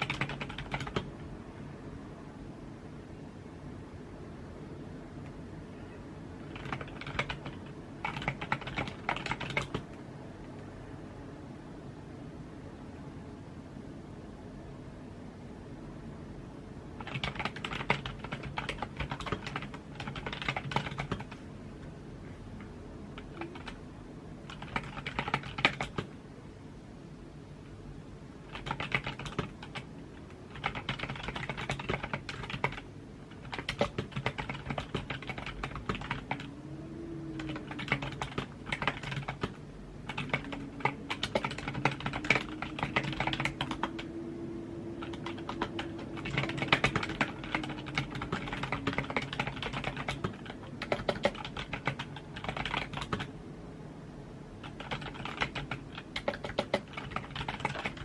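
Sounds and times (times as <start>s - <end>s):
typing on a computer keyboard: 0.0s - 1.1s, 6.4s - 10.0s, 17.0s - 21.4s, 23.1s - 23.8s, 24.4s - 26.1s, 28.5s - 36.5s, 37.4s - 44.1s, 45.0s - 53.3s, 54.6s - 58.0s.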